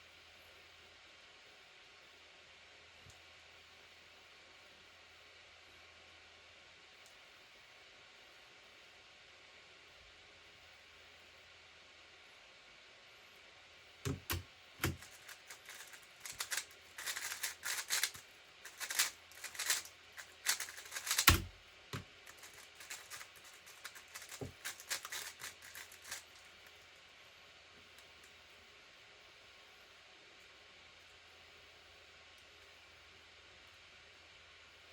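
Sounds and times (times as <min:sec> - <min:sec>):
puzzle cube plastic clicks: 0:14.1 - 0:26.4.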